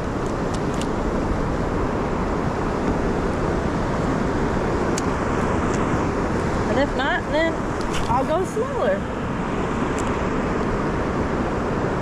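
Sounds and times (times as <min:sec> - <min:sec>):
wind: 0:00.0 - 0:12.0
moving water: 0:02.1 - 0:09.4.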